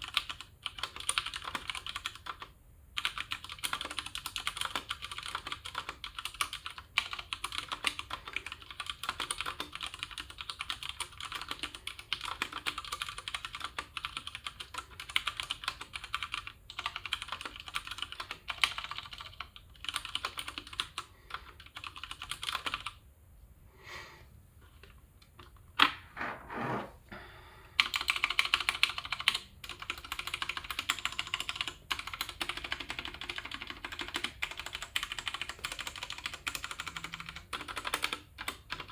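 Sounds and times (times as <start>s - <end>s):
mechanical keyboard typing: 0.0s - 23.0s, 27.8s - 38.9s.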